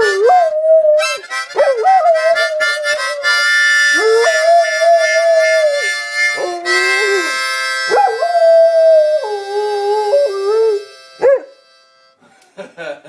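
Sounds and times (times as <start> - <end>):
dog howling: 0.0 - 11.5
held instrument chords: 0.0 - 12.3.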